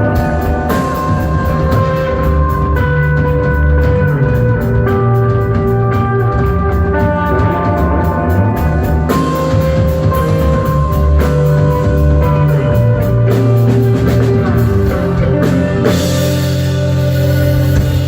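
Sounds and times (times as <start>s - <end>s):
drum kit: 0.0s - 18.0s
electric guitar: 0.0s - 18.0s.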